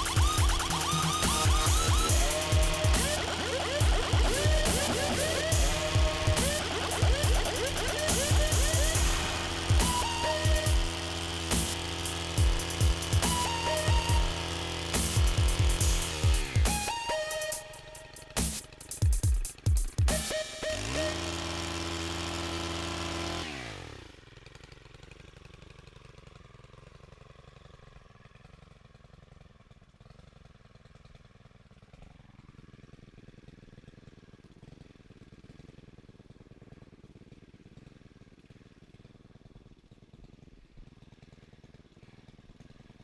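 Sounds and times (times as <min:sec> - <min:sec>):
music pitch sliding down: 0:00.0 - 0:19.1, 0:20.0 - 0:21.8
chainsaw idling: 0:00.0 - 0:43.0.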